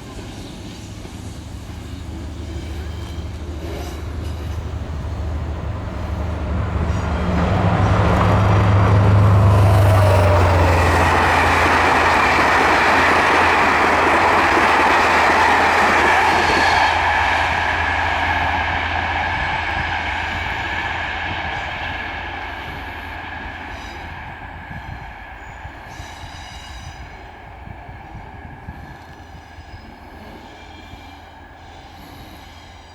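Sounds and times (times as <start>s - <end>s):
steam train rumbling past: 0.0s - 32.9s.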